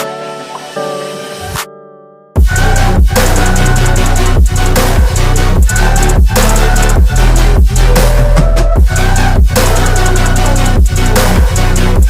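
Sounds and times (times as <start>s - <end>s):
electronic beat with heavy bass: 2.4s - 12.0s.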